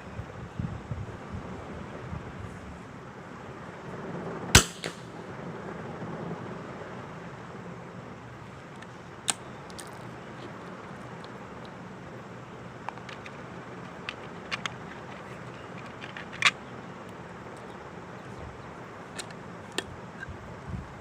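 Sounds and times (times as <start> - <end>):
rifle shot: 4.5 - 5.2.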